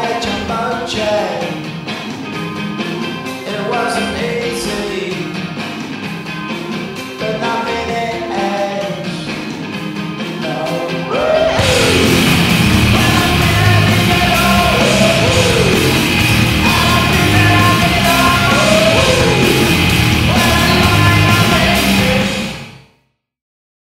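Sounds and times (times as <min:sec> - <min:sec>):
hard rock music: 0:00.0 - 0:22.9
yelled vocals: 0:10.4 - 0:22.8.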